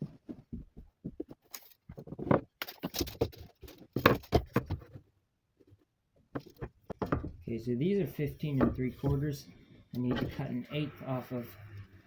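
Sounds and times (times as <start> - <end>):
wooden pieces knocking on bench: 6.3 - 7.4.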